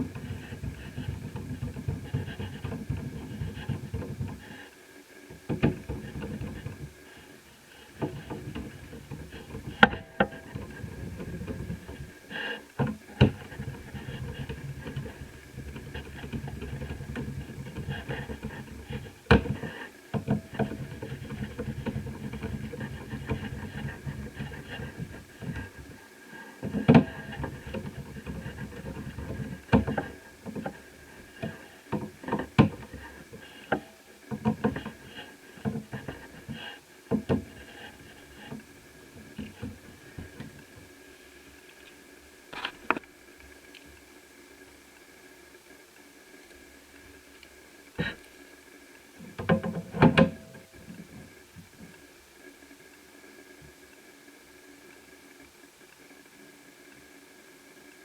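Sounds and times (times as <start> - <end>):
clicks and taps of plastic and metal: 0.0 - 4.7, 5.3 - 26.0, 26.6 - 40.9, 49.2 - 52.0
low rustling handling rumble: 0.0 - 41.8.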